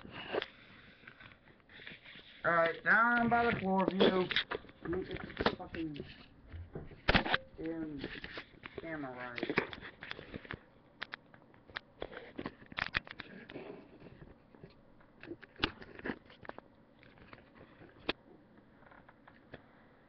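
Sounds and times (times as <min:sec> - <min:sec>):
webcam handling clicks and knocks: 0:03.4 - 0:13.2.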